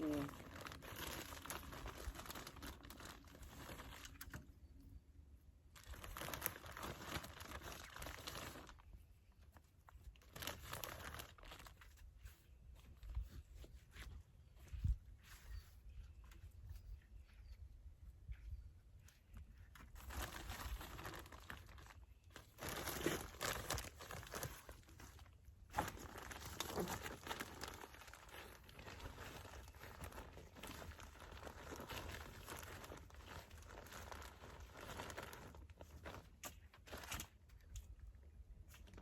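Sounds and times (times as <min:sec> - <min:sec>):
plastic bag crinkling: 0:00.0 - 0:04.5, 0:05.7 - 0:09.0, 0:09.6 - 0:12.0, 0:19.8 - 0:37.4.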